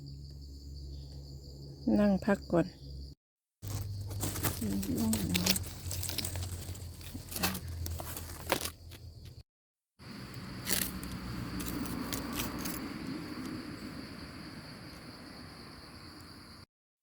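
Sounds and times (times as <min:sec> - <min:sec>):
high insect drone: 0:00.0 - 0:09.4, 0:10.0 - 0:16.7
dry leaves and twigs crunching: 0:03.6 - 0:09.4, 0:10.1 - 0:13.6.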